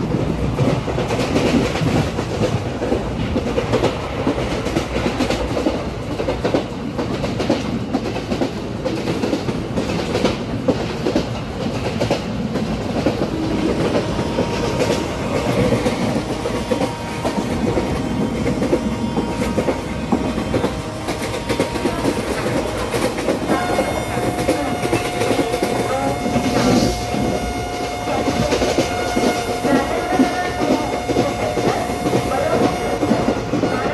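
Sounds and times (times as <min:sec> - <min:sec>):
train rumbling: 0:00.0 - 0:33.9
train wheels clacking on rails: 0:00.0 - 0:33.9
steady high tone: 0:13.8 - 0:33.9.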